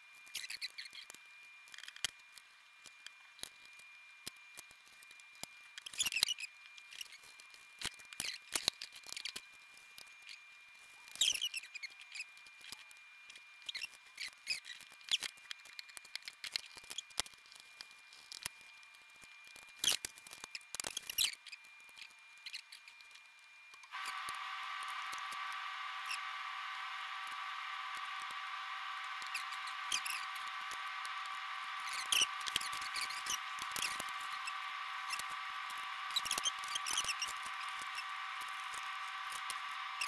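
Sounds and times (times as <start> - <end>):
steady whir with hum: 22.1 - 40.0
small tools clicking: 29.0 - 40.0.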